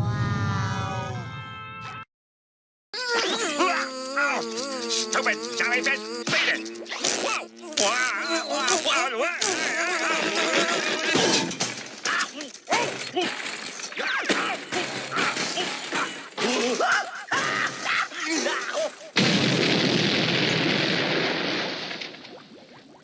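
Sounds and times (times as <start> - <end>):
cartoon explosion noise: 19.2 - 22.8.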